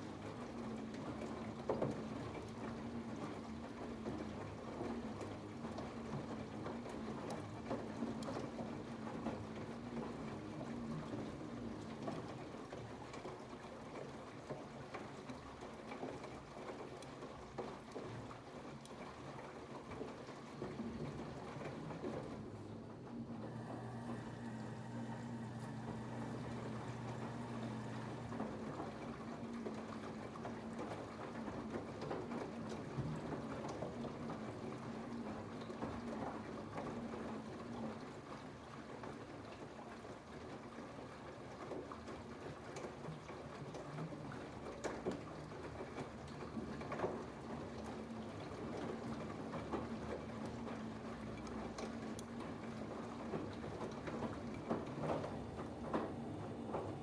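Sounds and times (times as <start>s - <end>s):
laundry sloshing in washing machine: 0.0s - 57.0s
low machine hum: 20.6s - 35.3s, 47.5s - 57.0s.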